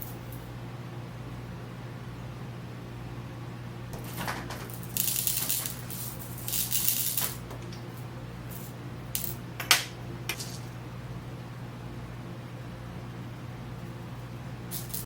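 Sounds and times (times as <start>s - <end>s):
beads rattling in a dish: 4.0s - 7.4s, 8.5s - 9.4s, 10.3s - 10.7s, 14.7s - 15.0s.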